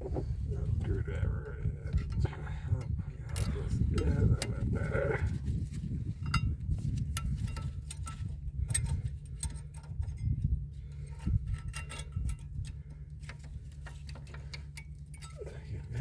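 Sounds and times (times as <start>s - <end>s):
low steady rumble: 0.0s - 16.0s
small metallic clicks and taps: 5.3s - 16.0s.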